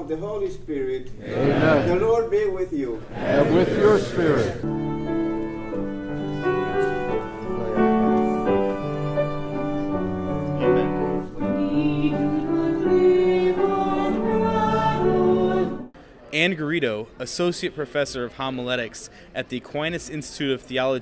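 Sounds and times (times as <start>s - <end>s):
choir singing: 1.2s - 2.0s, 3.1s - 4.8s, 11.4s - 16.0s
instrumental accompaniment: 3.4s - 16.0s.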